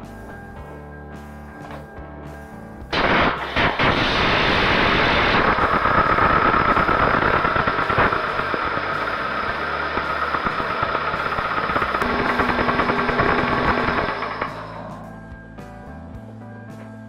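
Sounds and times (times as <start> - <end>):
car engine starting and running: 2.9 - 15.4.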